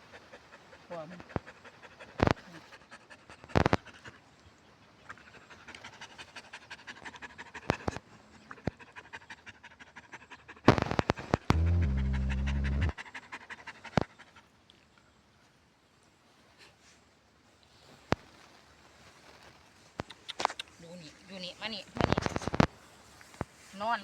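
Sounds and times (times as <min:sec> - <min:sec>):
dog panting: 0:00.0 - 0:04.2, 0:05.2 - 0:10.7, 0:11.5 - 0:14.4
loud low buzz: 0:11.5 - 0:12.9.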